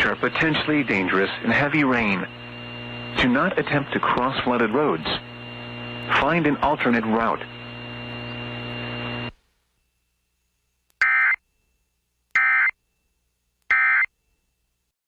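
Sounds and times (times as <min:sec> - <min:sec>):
steady broadcast hum: 0:00.0 - 0:14.9
digital data bursts: 0:11.0 - 0:11.4.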